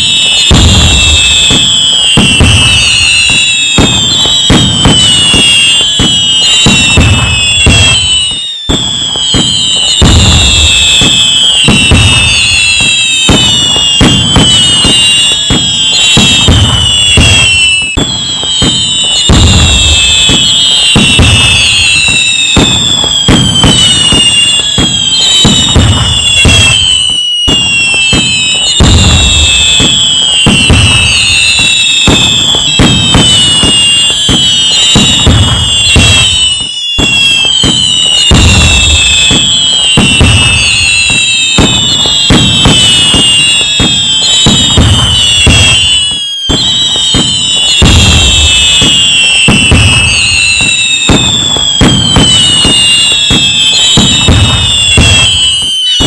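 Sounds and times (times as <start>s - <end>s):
fireworks crackling: 0.0s - 56.0s
low fireworks booms: 0.0s - 56.0s
whistling fireworks: 0.0s - 56.0s.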